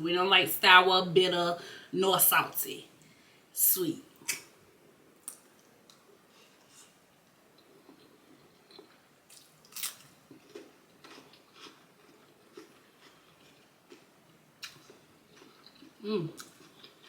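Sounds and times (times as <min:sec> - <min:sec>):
chewing and wet mouth sounds: 0:07.3 - 0:17.0.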